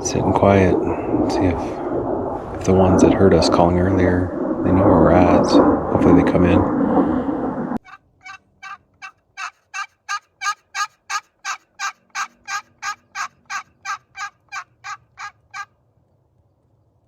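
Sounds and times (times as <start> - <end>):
turkey yelps: 7.8 - 15.7.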